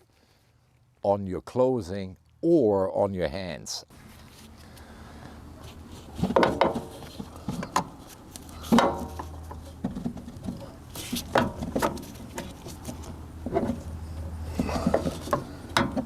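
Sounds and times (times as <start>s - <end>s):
hands working at oil filter: 4.1s - 16.0s.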